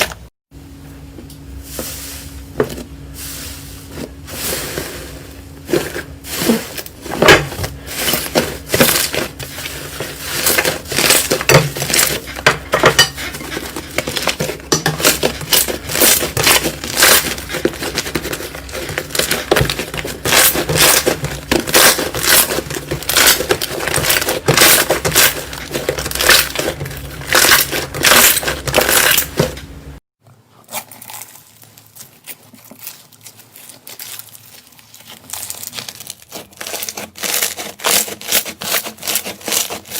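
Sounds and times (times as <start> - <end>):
slime crackling and popping: 30.8 - 39.6.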